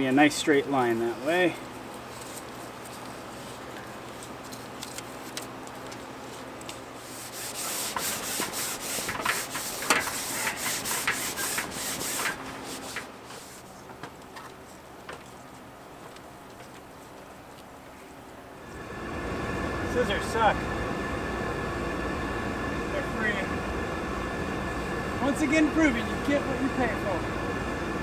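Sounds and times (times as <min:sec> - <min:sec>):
velcro strip rubbing and crinkling: 0:01.9 - 0:13.8.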